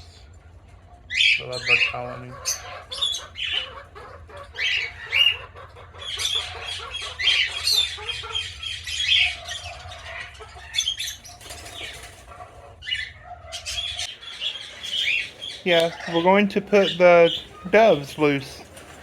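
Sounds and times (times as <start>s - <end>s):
birds chirping and squawking: 0.0s - 19.0s
wing-flapping: 11.2s - 12.3s.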